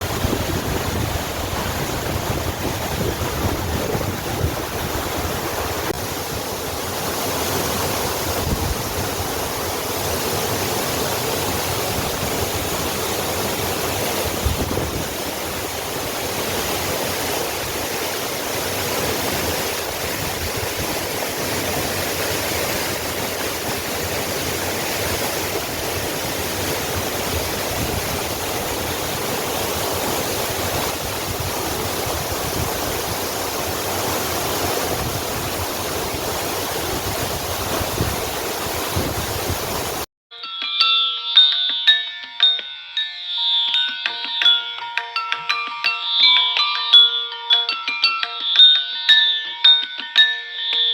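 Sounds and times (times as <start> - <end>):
waterfall rushing: 0.0 - 40.1.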